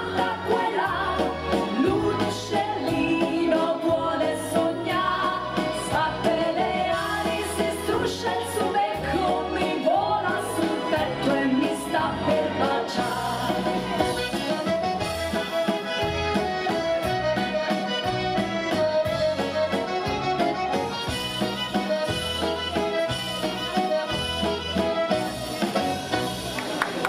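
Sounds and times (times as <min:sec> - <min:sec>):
accordion waltz: 0:00.0 - 0:26.6
bass and chord accompaniment: 0:00.0 - 0:27.0.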